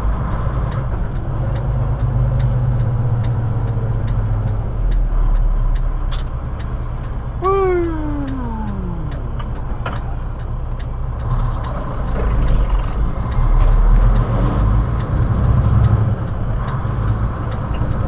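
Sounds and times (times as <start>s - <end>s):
diesel engine rumble: 0.0s - 18.0s
faint ticking: 6.6s - 11.3s.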